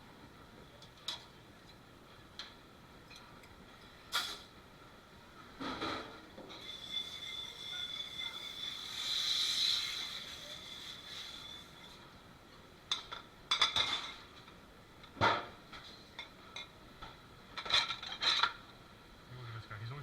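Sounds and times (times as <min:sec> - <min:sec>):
high whine with hiss: 0:03.8 - 0:13.2
dishes and cutlery clattering: 0:12.9 - 0:14.3, 0:17.6 - 0:18.6.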